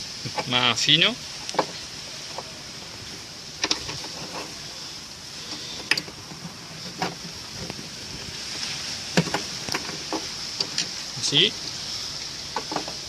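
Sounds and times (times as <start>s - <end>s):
steady faint hiss: 0.0s - 13.0s
sharp clicks and knocks: 1.4s - 2.5s, 3.6s - 4.6s, 5.5s - 8.0s, 9.1s - 11.0s, 12.5s - 13.0s.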